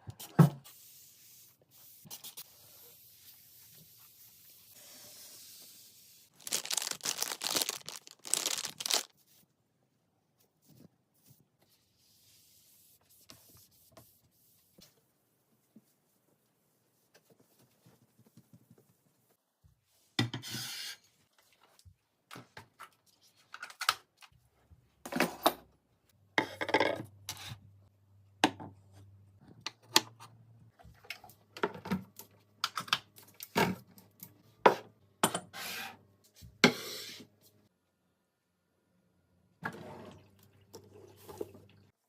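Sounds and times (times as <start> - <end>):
household items handled and set down: 6.4 - 9.1, 25.0 - 25.7.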